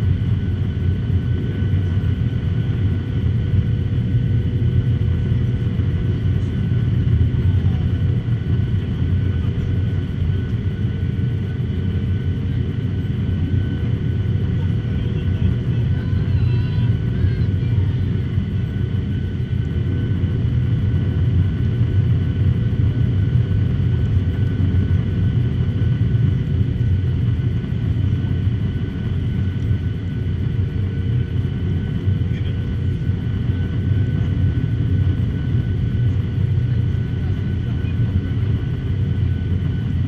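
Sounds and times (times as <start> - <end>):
jet airliner engines rumbling: 0.0 - 40.0.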